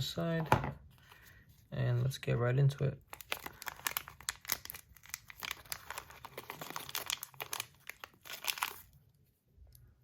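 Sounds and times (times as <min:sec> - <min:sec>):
packaging crinkling: 0:03.1 - 0:09.0.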